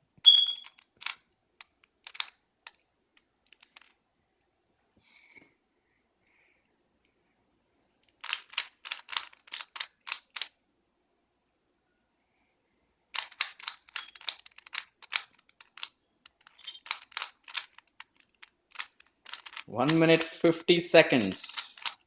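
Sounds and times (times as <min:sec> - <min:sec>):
puzzle cube layers clicking: 0:00.3 - 0:02.8, 0:03.5 - 0:03.9, 0:08.1 - 0:10.5, 0:13.2 - 0:22.0.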